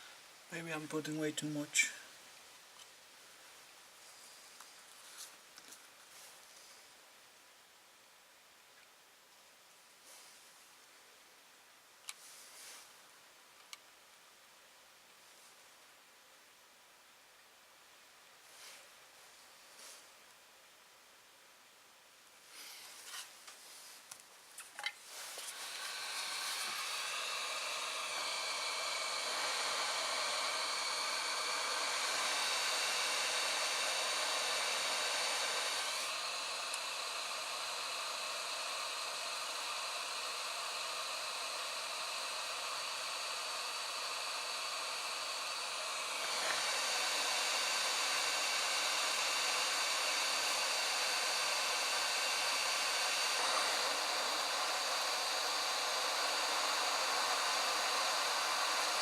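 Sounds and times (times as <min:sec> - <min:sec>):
hot-air station blowing hiss: 0:00.0 - 0:02.4, 0:10.0 - 0:10.7, 0:12.1 - 0:13.0, 0:18.4 - 0:18.9, 0:22.4 - 0:24.1, 0:25.0 - 0:59.0.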